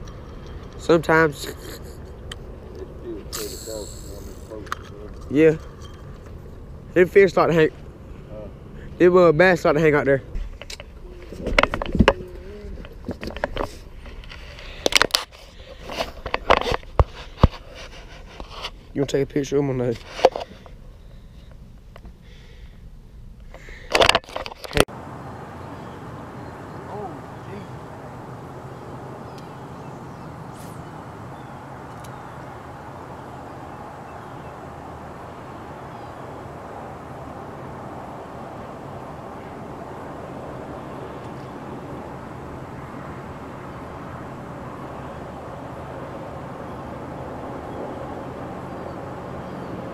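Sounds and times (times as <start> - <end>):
outdoor rumble and hiss: 0.0 - 49.9
scrapes clicks and rustles: 10.4 - 18.8, 23.9 - 24.9.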